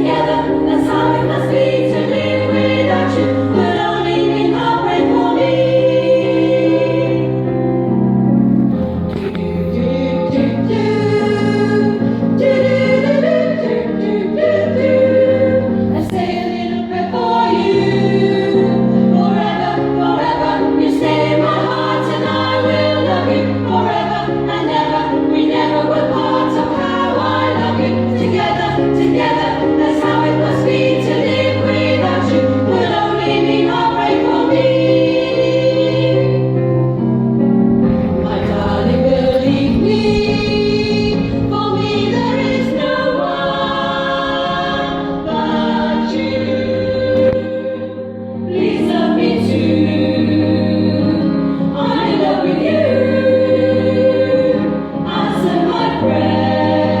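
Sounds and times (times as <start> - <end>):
women's choir singing: 0.0 - 57.0
low bass accompaniment: 37.2 - 45.3.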